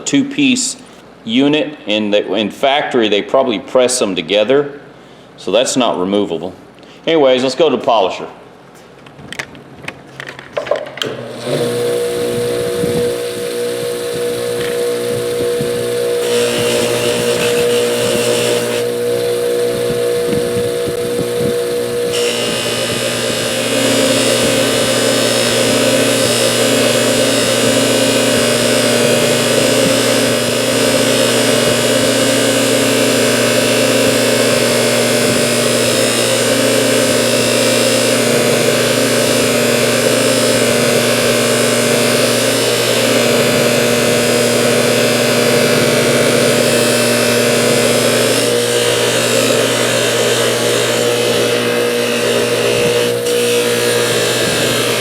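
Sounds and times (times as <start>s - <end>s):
electric polisher motor hum: 11.0s - 55.0s.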